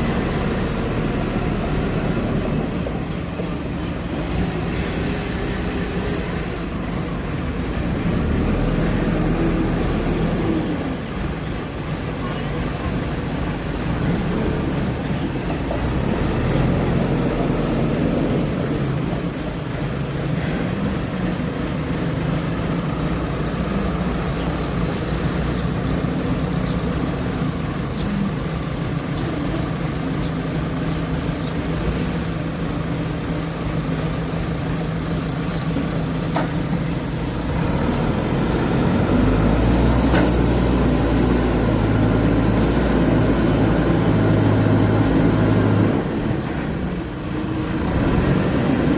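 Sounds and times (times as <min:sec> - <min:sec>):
diesel engine running: 0:00.0 - 0:48.9
high-pitched squeals: 0:39.5 - 0:44.3.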